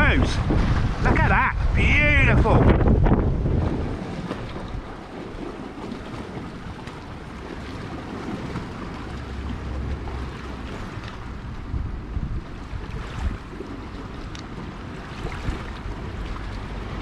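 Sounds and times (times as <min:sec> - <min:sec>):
sea washing: 0:00.0 - 0:17.0
wind buffeting microphone: 0:00.0 - 0:17.0.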